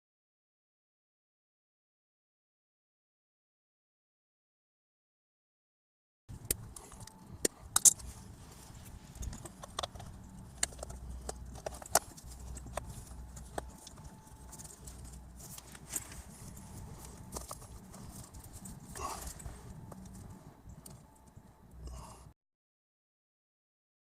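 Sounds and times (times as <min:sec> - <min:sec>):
tools clicking and knocking: 0:06.3 - 0:21.4
low steady hum: 0:06.3 - 0:22.4.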